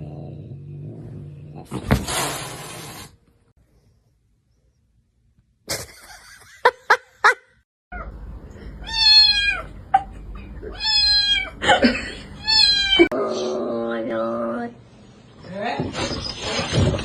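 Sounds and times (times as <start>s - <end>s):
cat meowing: 8.8s - 9.7s, 10.7s - 11.6s.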